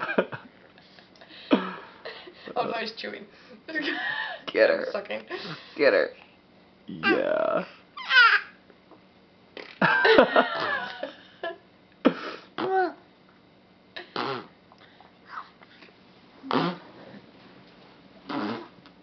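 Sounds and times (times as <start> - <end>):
baby blowing raspberries: 14.0 - 14.5, 16.4 - 17.2, 18.3 - 18.8.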